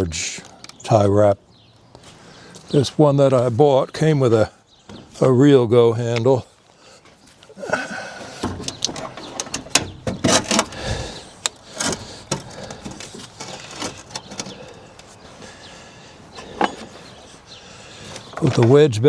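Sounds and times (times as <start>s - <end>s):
metal clunks and clicks: 8.2s - 15.1s.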